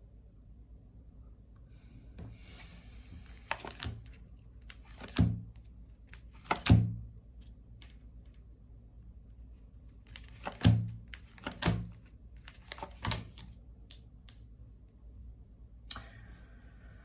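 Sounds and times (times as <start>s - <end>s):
cards rustling and sliding: 2.3s - 8.4s, 9.5s - 14.5s
cards knocking on table: 6.4s - 7.0s.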